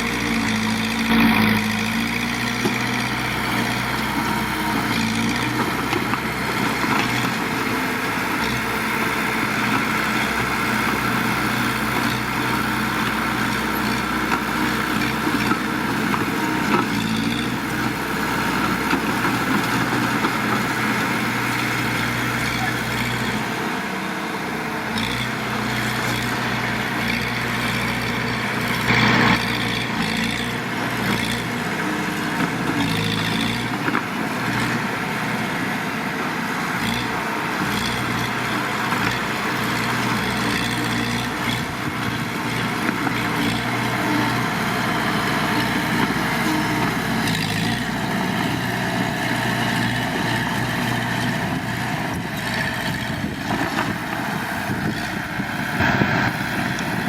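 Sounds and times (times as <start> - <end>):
heavy diesel engine running: 0.0 - 57.0.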